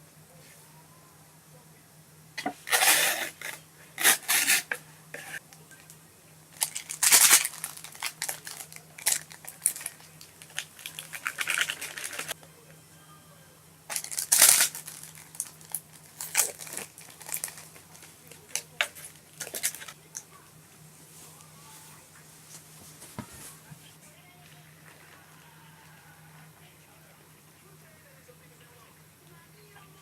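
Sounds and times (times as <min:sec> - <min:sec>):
plastic packaging tearing: 0:02.6 - 0:04.8, 0:06.6 - 0:12.4, 0:13.9 - 0:20.0
plastic packaging crinkling: 0:06.6 - 0:12.4, 0:13.9 - 0:20.2.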